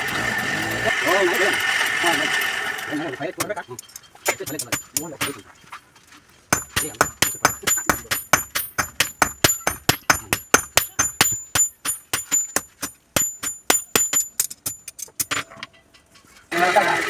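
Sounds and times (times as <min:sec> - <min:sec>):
hammer striking iron on anvil: 0:03.4 - 0:05.4, 0:06.5 - 0:15.7.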